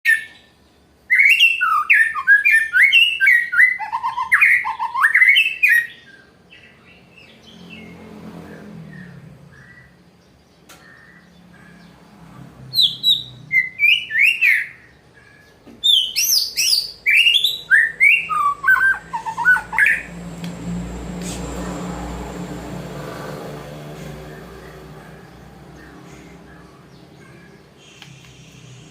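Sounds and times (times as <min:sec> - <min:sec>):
bird singing whistled phrases: 0:01.1 - 0:06.3, 0:12.8 - 0:14.9, 0:15.8 - 0:20.1.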